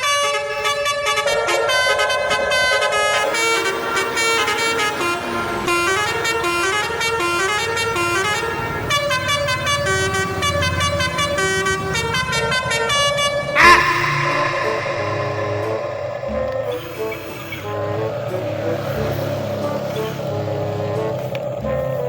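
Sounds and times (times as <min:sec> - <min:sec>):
loud wavering tone: 0:00.0 - 0:05.2, 0:13.6 - 0:17.9
fast horn-like melodic tune: 0:00.0 - 0:18.2.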